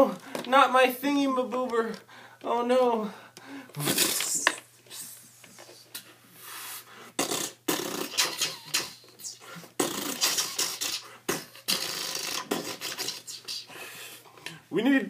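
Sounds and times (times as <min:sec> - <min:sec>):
hissing vocal bursts: 0:03.8 - 0:05.2, 0:06.4 - 0:14.0.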